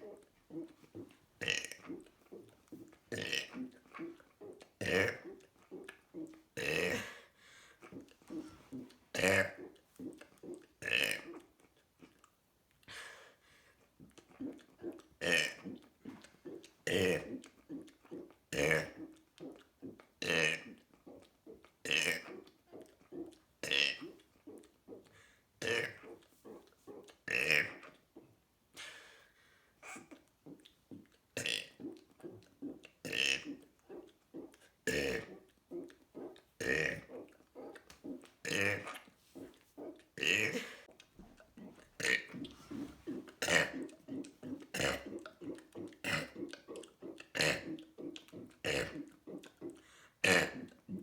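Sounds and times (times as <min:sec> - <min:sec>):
person burping loudly: 0:06.6 - 0:07.2, 0:36.6 - 0:37.7, 0:40.2 - 0:40.9, 0:42.0 - 0:47.7, 0:48.4 - 0:49.4
person burping: 0:40.2 - 0:40.9, 0:44.4 - 0:45.1, 0:46.0 - 0:46.7.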